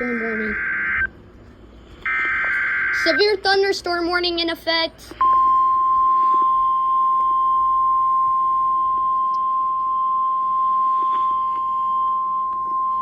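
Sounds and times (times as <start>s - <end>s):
steady high alarm tone: 0.0s - 1.1s, 2.1s - 3.5s, 5.2s - 13.0s.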